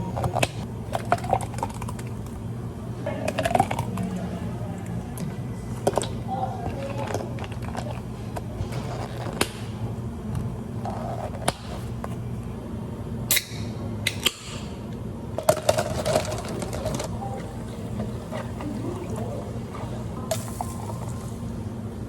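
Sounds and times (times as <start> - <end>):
steady low hum: 0.0 - 22.0
cups and utensils clicking: 3.1 - 4.3.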